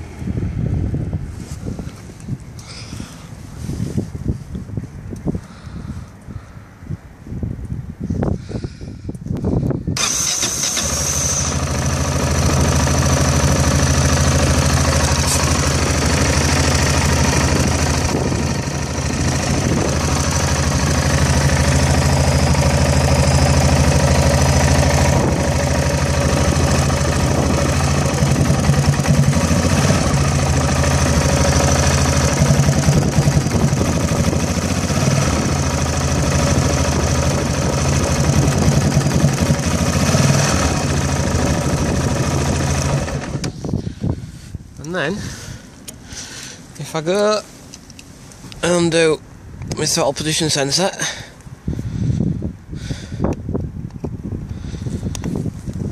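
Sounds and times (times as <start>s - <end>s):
motorcycle engine starting and idling: 10.0s - 48.8s.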